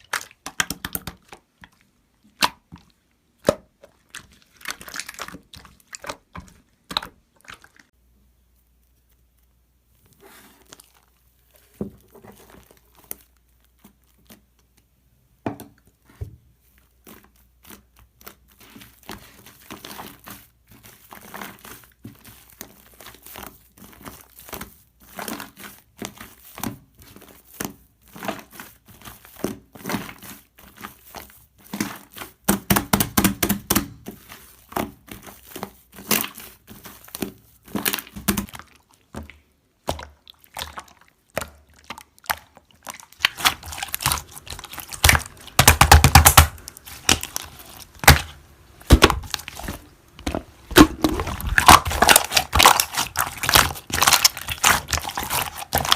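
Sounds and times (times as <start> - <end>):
crinkling and tearing: 42.5 - 55.9.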